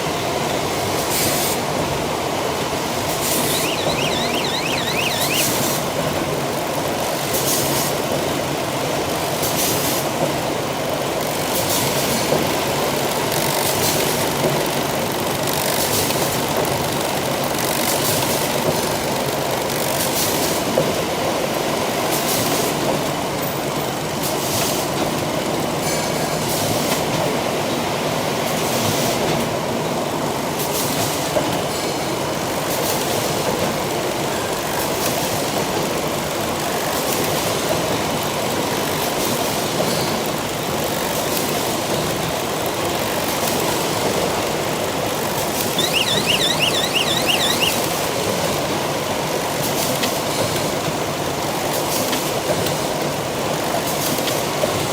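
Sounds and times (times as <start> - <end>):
sharp machine stroke: 3.5 - 5.6
warbling tone: 3.6 - 5.6, 45.8 - 47.8.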